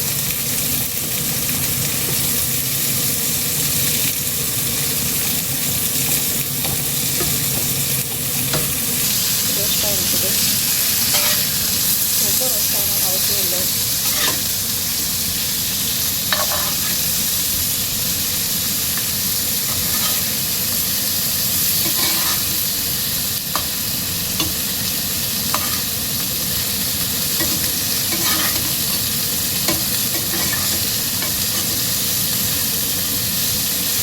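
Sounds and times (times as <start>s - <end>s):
food sizzling in oil: 0.0s - 34.0s
spatula scraping and tapping pan: 6.0s - 8.8s, 11.0s - 11.5s, 14.0s - 14.5s, 16.3s - 17.0s, 19.7s - 20.3s, 21.8s - 22.6s, 25.5s - 25.9s, 27.4s - 29.0s, 29.7s - 31.7s.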